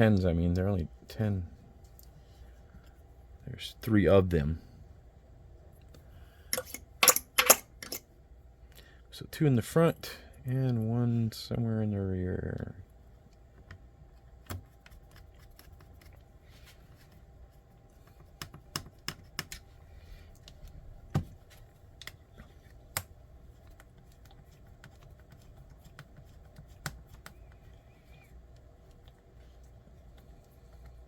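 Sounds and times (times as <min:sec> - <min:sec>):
small parts clicking and tapping: 0:06.5 - 0:08.0.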